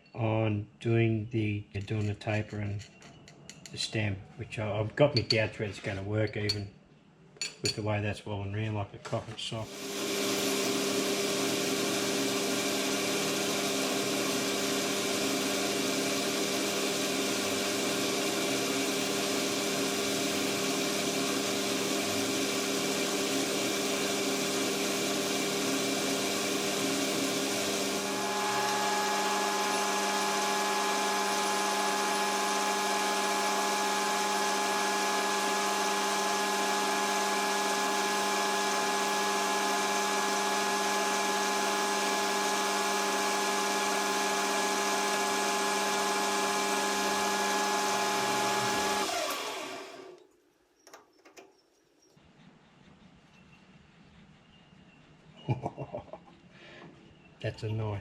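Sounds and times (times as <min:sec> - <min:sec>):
lathe machining metal: 0:09.7 - 0:50.2
high machine whine: 0:27.0 - 0:45.1.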